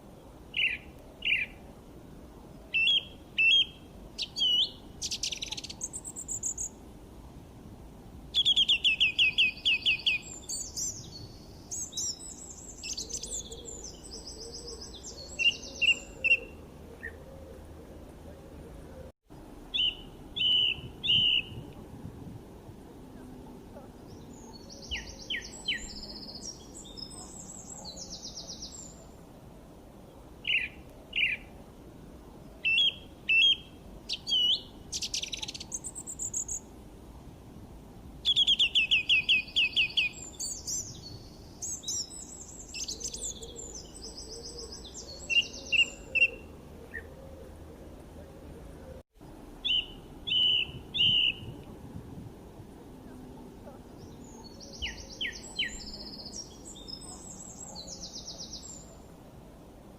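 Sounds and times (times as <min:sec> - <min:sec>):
faint background hiss: 0:00.0 - 0:59.9
songbirds chirping and singing: 0:02.6 - 0:06.7, 0:08.4 - 0:19.1, 0:23.1 - 0:29.2, 0:38.3 - 0:48.1, 0:49.6 - 0:51.6, 0:53.1 - 0:59.0.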